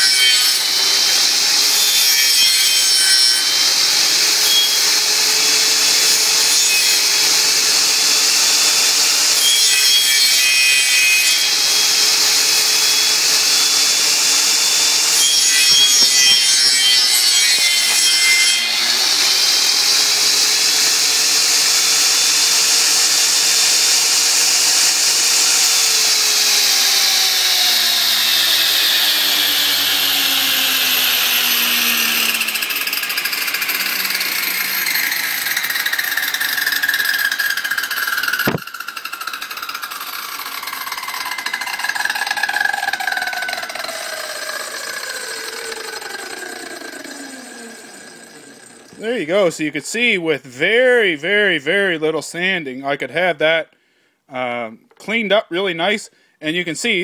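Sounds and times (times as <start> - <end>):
lathe motor whine: 0.0 - 2.0, 3.2 - 9.4, 11.4 - 15.2, 17.6 - 49.0
cutter shaving wood: 0.0 - 49.5.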